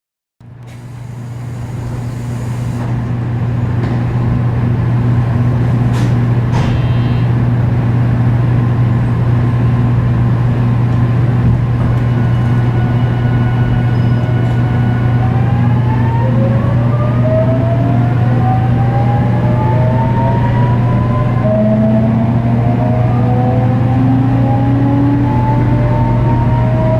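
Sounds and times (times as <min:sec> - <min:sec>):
train motor hum: 0:00.4 - 0:26.9
inverter tones rising in pitch: 0:11.6 - 0:26.9.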